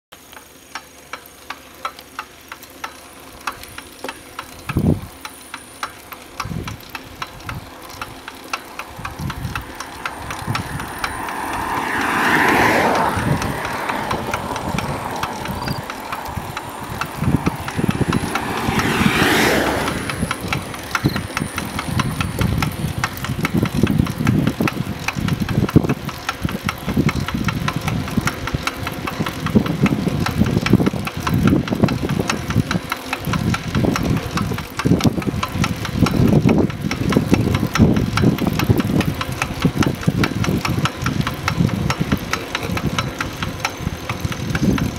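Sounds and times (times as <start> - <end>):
engine running with rapid knocking: 0.1 - 44.9
engine revving: 8.0 - 25.3.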